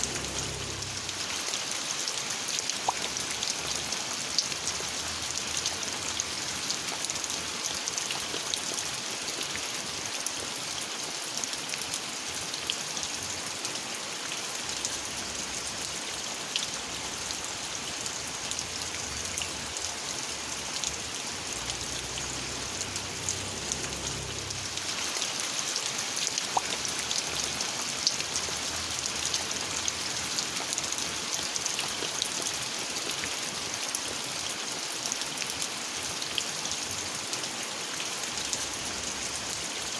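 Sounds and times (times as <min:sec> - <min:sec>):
faint low rumble: 0:00.0 - 0:01.4
steady rain falling: 0:00.0 - 0:39.9.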